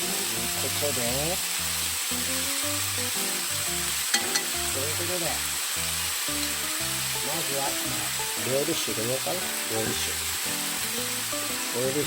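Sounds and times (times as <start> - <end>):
food sizzling in a frying pan: 0.0 - 12.0.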